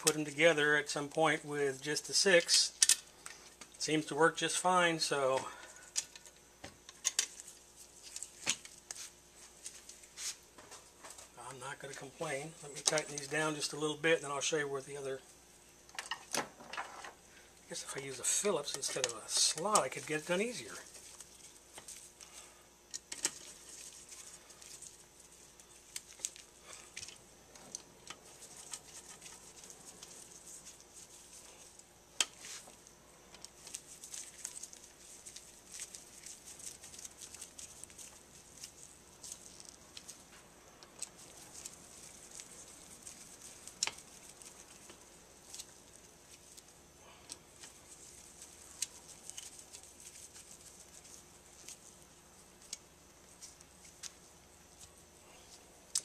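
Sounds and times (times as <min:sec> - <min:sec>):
small metal clicks and scrapes: 0:01.9 - 0:03.7, 0:05.3 - 0:09.0, 0:17.7 - 0:54.2.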